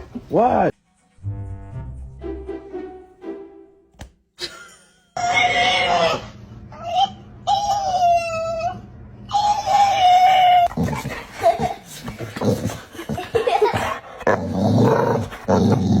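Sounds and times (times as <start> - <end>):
dog howling: 5.2 - 10.8.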